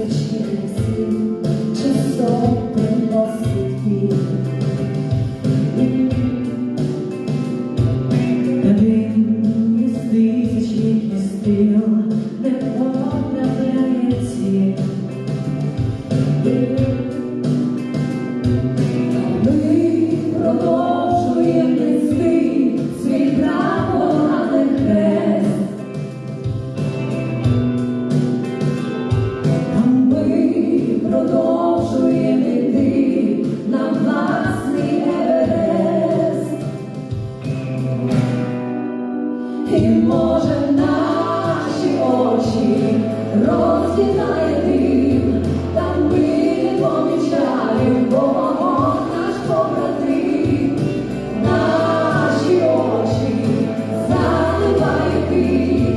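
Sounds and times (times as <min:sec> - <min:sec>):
choir singing with accompaniment: 0:18.7 - 0:26.6, 0:29.4 - 0:37.4, 0:39.3 - 0:55.9.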